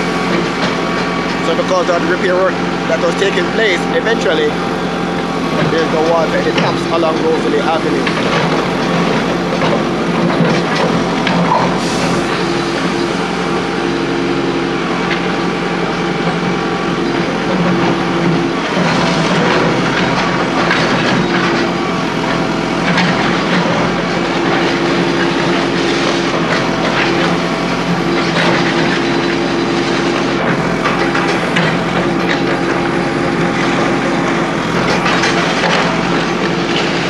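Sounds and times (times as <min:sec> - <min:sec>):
machinery engine running: 0:00.0 - 0:37.0
rattling and clattering: 0:30.1 - 0:37.0.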